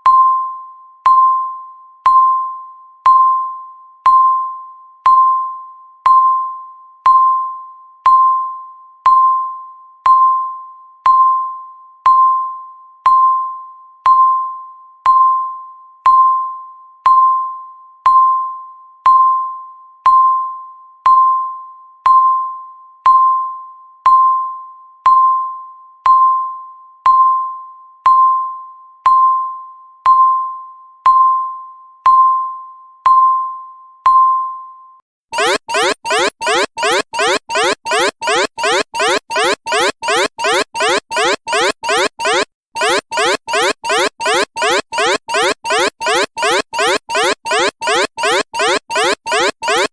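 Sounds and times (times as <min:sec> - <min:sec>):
electronic timer beeps: 0:35.4 - 0:49.9.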